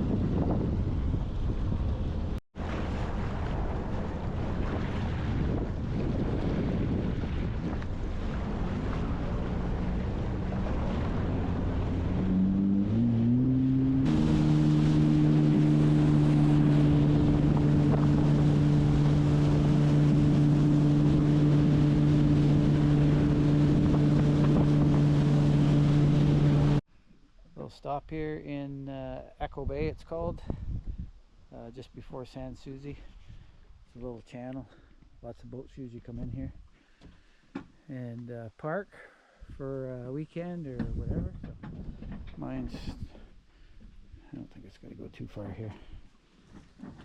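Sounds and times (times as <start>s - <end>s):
watercraft engine: 0.0s - 26.8s
wind on microphone: 0.0s - 26.8s, 29.4s - 31.3s, 32.8s - 33.9s, 40.6s - 44.6s
water rushing: 2.6s - 26.8s.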